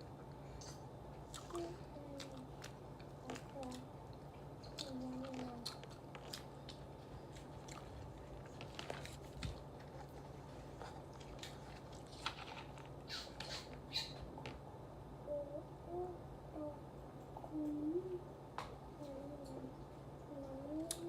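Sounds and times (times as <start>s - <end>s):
chewing and lip smacking: 0.6s - 13.6s.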